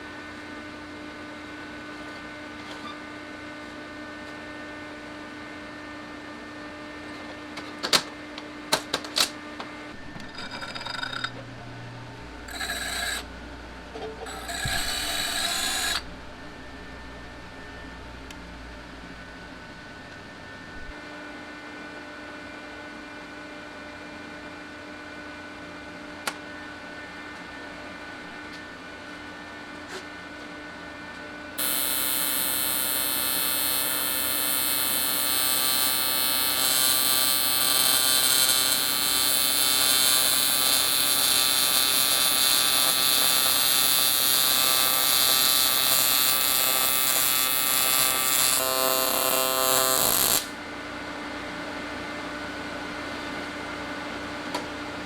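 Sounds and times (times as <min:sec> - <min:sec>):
welder humming: 0:10.0 - 0:19.8, 0:31.6 - 0:50.7
welding arc buzzing and hissing: 0:12.0 - 0:13.4, 0:14.2 - 0:16.5, 0:31.6 - 0:50.6.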